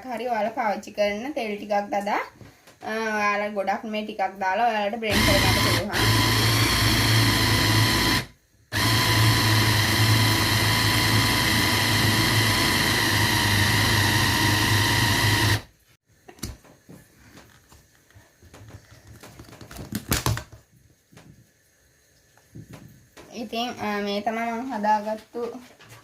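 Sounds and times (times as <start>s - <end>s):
electric blender motor running: 5.1s - 15.7s
faint handling sounds: 16.6s - 20.0s.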